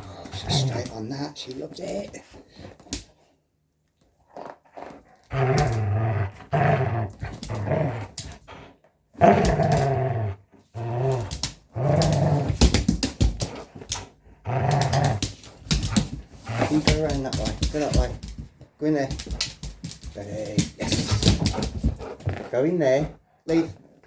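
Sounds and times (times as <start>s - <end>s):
dog growling: 0.0s - 1.0s, 4.3s - 12.6s, 14.0s - 18.1s.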